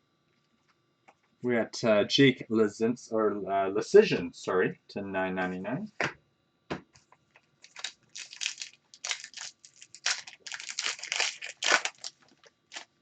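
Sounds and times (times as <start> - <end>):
plastic packaging crinkling: 7.6 - 13.0.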